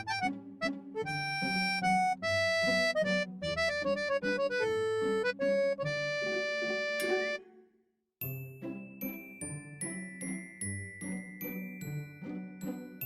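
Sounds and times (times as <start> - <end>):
accordion-like melody: 0.0 - 7.6.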